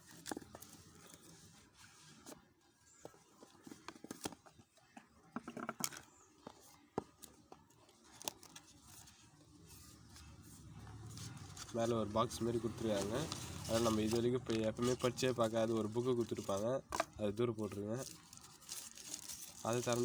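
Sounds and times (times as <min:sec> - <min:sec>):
packaging clicks and rustles: 0:07.0 - 0:20.0.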